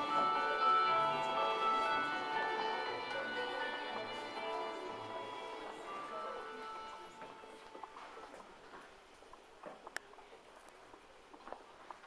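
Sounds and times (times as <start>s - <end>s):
music: 0.0s - 8.4s.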